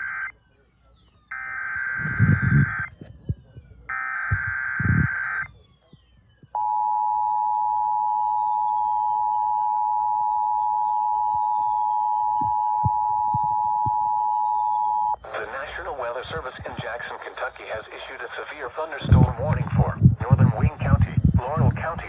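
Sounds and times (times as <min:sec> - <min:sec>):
steady attention tone: 0:01.3 - 0:05.5, 0:06.6 - 0:22.0
buzzy digital bursts: 0:01.6 - 0:05.5, 0:15.2 - 0:22.0.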